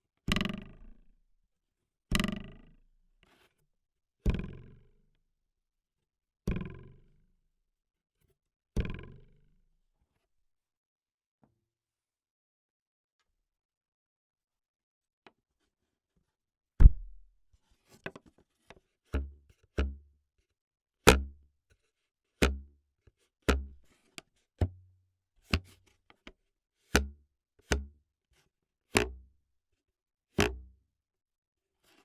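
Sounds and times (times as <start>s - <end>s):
sharp knocks on hard surface: 16.8s - 17.2s, 19.2s - 20.0s, 27.0s - 28.0s.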